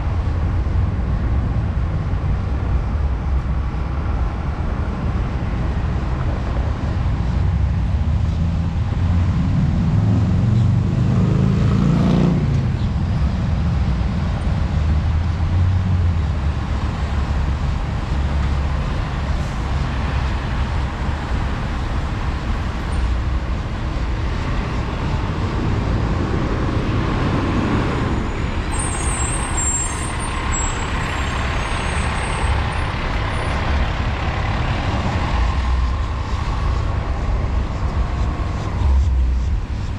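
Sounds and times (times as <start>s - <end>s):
street traffic: 0.0s - 39.9s
heavy vehicle engine running: 12.4s - 39.9s.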